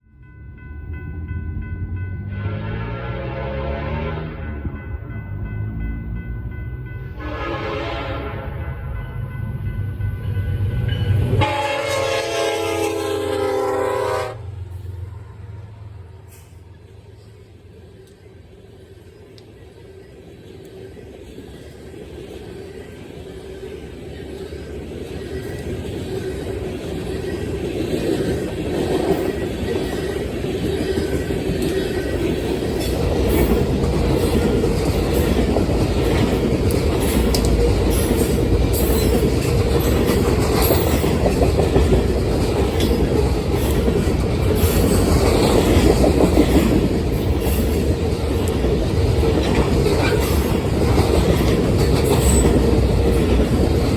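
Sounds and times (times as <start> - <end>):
train rumbling past: 0.0 - 53.9
wheels clattering over rail joints: 24.1 - 53.9.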